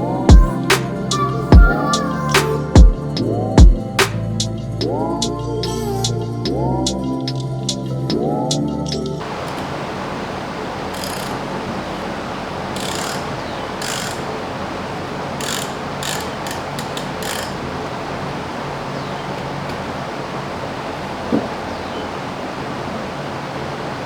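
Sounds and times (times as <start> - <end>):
steady background hiss: 9.0 - 24.0
socket ratchet clicking: 12.8 - 14.3, 15.4 - 17.7.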